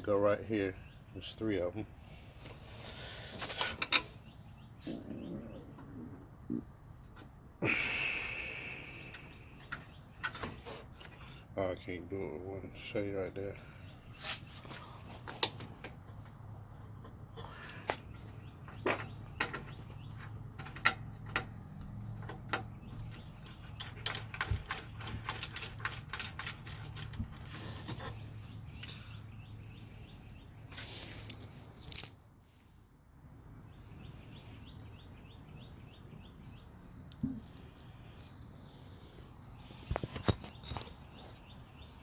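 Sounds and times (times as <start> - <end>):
sharp clicks and knocks: 18.7 - 28.0
metal bolts and tools clinking: 18.9 - 28.1, 31.1 - 32.3.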